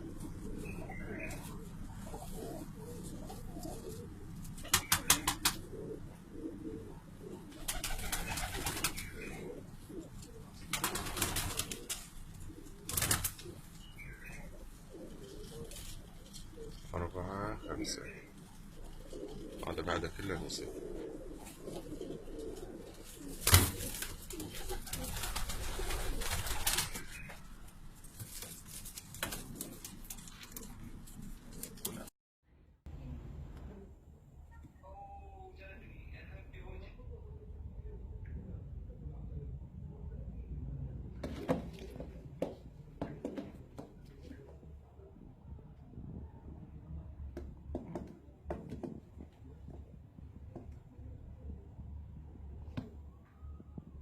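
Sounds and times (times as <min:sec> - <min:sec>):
pigeons cooing: 0:00.0 - 0:27.5, 0:28.2 - 0:32.1
rustling: 0:07.7 - 0:16.9, 0:21.0 - 0:32.1.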